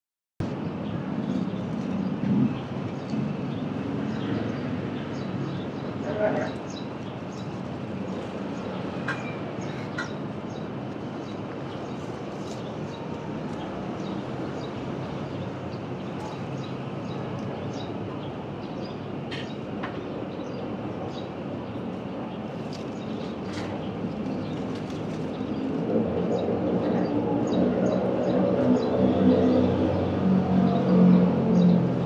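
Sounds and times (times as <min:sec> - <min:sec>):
outdoor background noise: 0:00.4 - 0:32.0.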